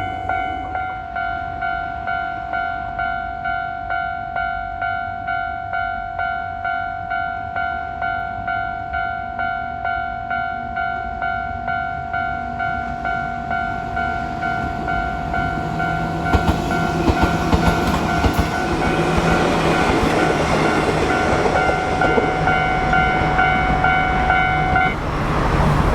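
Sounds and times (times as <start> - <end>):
railroad crossing alarm ringing: 0.0 - 25.1
train wheels clacking over rail joints: 16.1 - 23.9.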